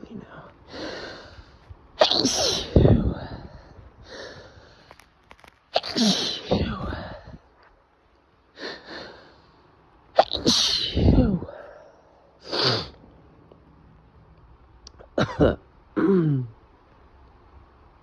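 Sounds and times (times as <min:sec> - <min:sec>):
person sneezing: 0:02.0 - 0:02.9, 0:05.8 - 0:07.2, 0:10.2 - 0:11.7, 0:12.4 - 0:13.0.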